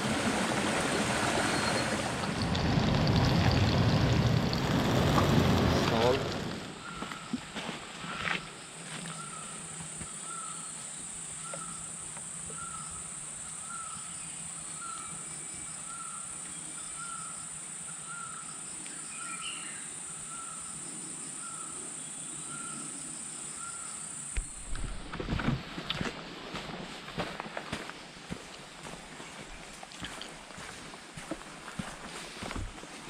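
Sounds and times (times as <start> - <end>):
insect chirping call: 0.3 - 26.1.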